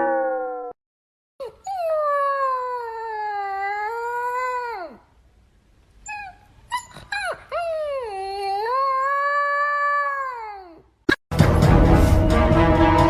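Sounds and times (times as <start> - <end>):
dog howling: 0.0 - 0.8.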